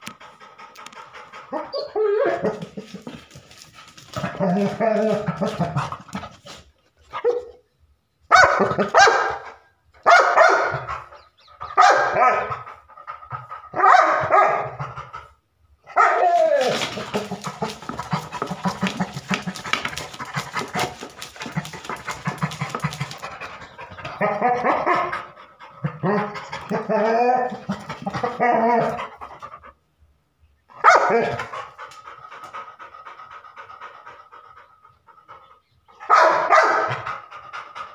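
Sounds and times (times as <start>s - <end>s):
dog panting rapidly: 0.1s - 1.7s, 16.8s - 24.2s, 31.4s - 35.7s, 36.8s - 37.9s
dog barking: 8.3s - 10.9s, 11.8s - 12.6s, 13.7s - 14.8s, 15.9s - 16.3s, 30.8s - 31.5s, 36.0s - 37.0s.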